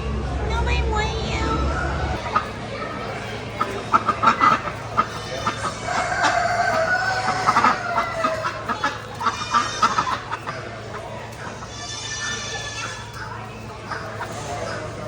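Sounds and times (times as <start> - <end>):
steady low hum: 0.0 - 15.0
chickens clucking: 1.5 - 15.0
rooster crowing: 5.6 - 8.9.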